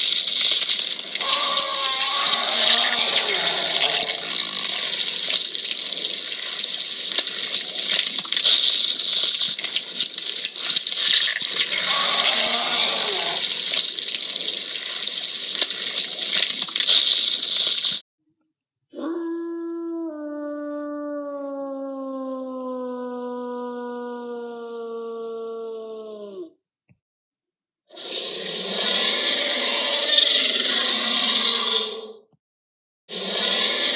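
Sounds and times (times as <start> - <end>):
rushing hiss with rattling: 0.0 - 18.0.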